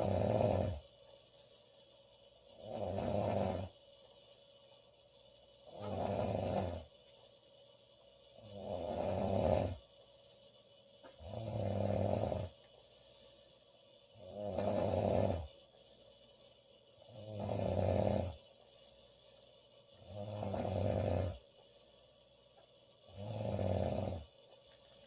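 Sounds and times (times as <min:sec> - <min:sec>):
woman snoring: 0:00.0 - 0:00.8, 0:02.5 - 0:03.8, 0:05.7 - 0:06.9, 0:08.4 - 0:09.8, 0:11.2 - 0:12.6, 0:14.2 - 0:15.5, 0:17.1 - 0:18.4, 0:20.0 - 0:21.4, 0:23.1 - 0:24.3.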